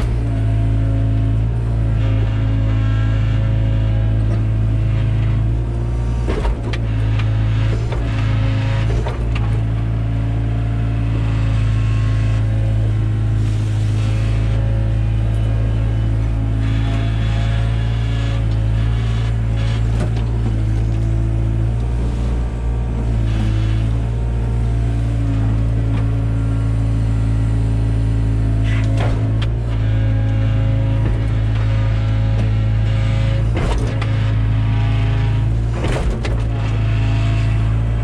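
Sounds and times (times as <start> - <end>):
excavator diesel engine running: 0.0 - 38.0
excavator bucket clunks: 5.4 - 10.0, 19.8 - 22.0, 28.6 - 30.0, 30.6 - 37.0.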